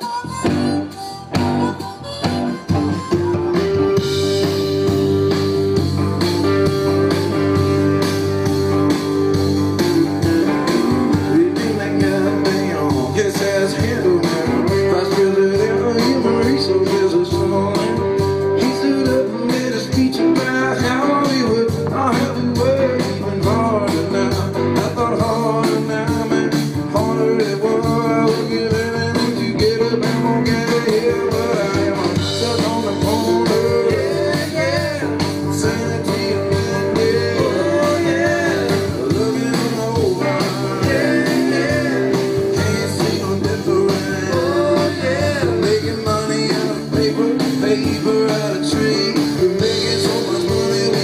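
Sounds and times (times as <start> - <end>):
rock band playing live: 0.0 - 51.0
lead vocal singing: 11.1 - 51.0.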